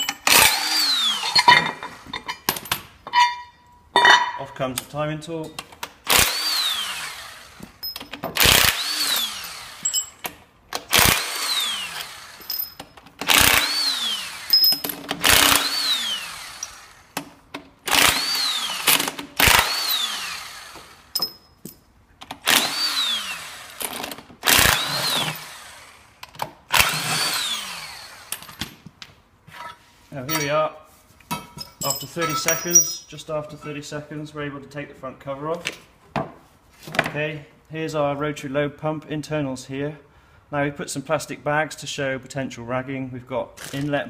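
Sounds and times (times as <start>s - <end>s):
clicks of bolts and metal: 0.0s - 0.5s, 1.2s - 6.0s, 7.6s - 8.5s, 21.1s - 22.5s, 26.2s - 26.6s, 31.2s - 33.1s.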